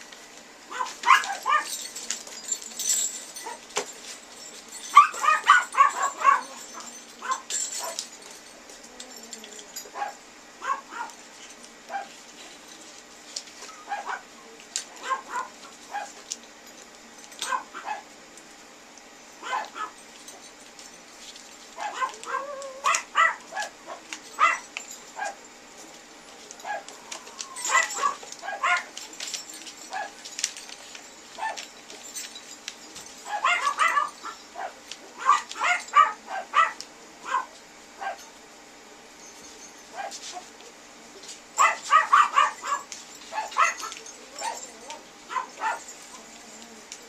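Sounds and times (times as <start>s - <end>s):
puppies yipping and whimpering: 0.7s - 3.6s, 4.8s - 8.0s, 13.6s - 16.2s, 21.8s - 25.4s, 26.6s - 30.2s, 33.2s - 38.2s, 41.6s - 47.0s.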